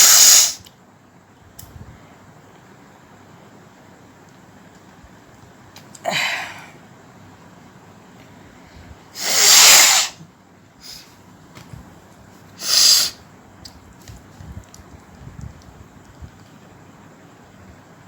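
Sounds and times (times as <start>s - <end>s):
woman sneezing: 9.2s - 10.2s.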